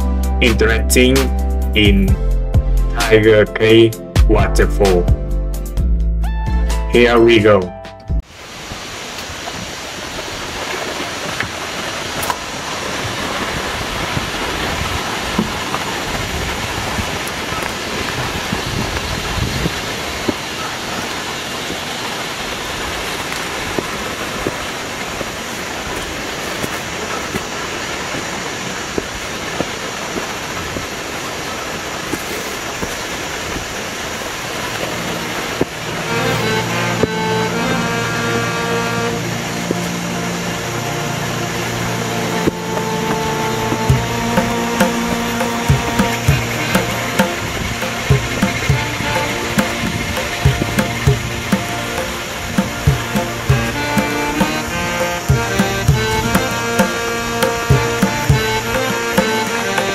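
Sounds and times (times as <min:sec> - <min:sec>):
background music: 0:00.0 - 0:08.2, 0:34.9 - 0:59.9
waterfall rushing: 0:08.2 - 0:59.9.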